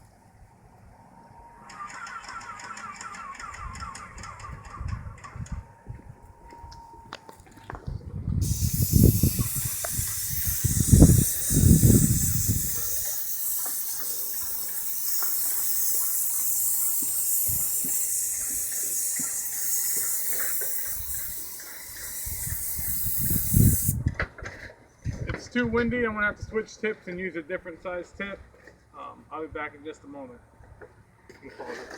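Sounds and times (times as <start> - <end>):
wind on microphone: 3.6 - 6.9, 7.7 - 13.2, 17.3 - 18.7, 20.7 - 24.4
paint sprayer hissing: 8.4 - 24.0.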